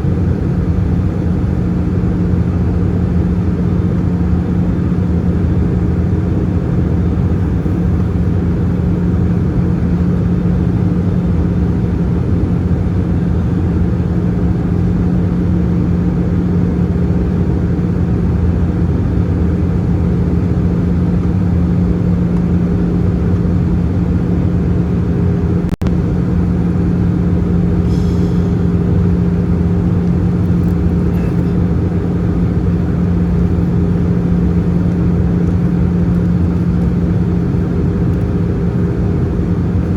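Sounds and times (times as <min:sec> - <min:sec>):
airplane cabin roar: 0:00.0 - 0:39.9
constant low hum: 0:00.0 - 0:39.9.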